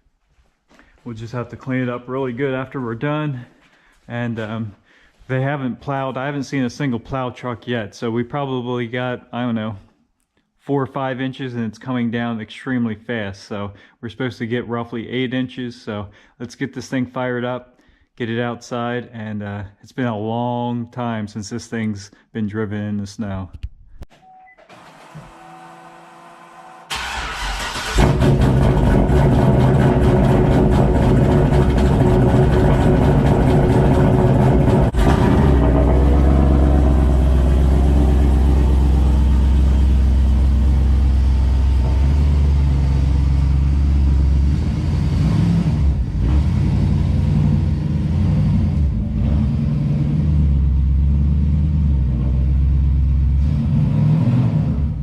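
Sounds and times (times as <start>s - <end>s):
engine cranking: 26.9s - 40.6s
truck engine idling: 26.9s - 44.5s.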